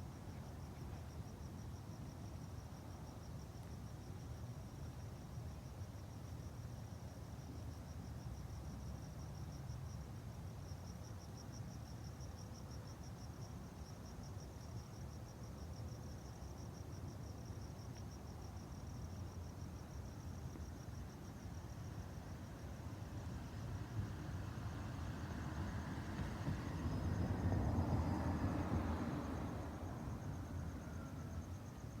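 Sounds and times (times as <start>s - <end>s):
crickets chirping: 0.0s - 32.0s.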